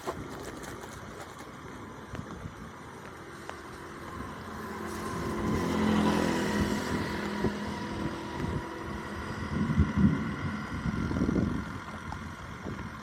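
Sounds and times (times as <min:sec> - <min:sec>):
vehicle engine passing by: 0:04.1 - 0:11.4.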